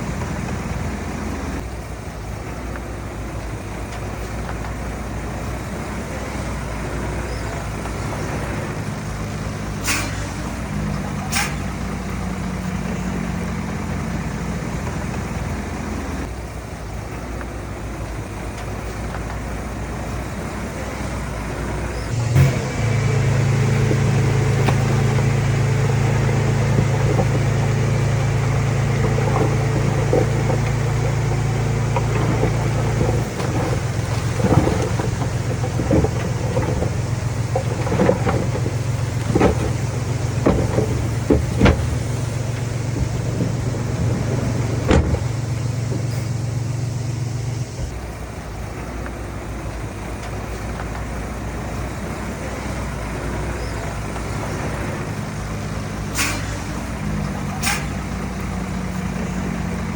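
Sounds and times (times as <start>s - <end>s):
heavy diesel engine running: 0.0s - 59.9s
metallic clanks and knocks: 24.5s - 46.5s.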